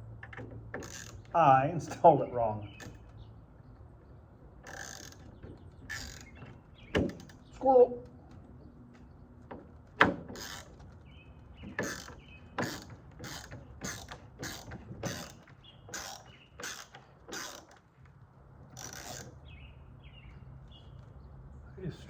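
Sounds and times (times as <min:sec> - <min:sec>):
bird chirping: 0:00.9 - 0:09.5, 0:10.3 - 0:17.0, 0:18.9 - 0:22.0
ratcheting hand tool clicking: 0:11.8 - 0:17.8, 0:18.8 - 0:19.4.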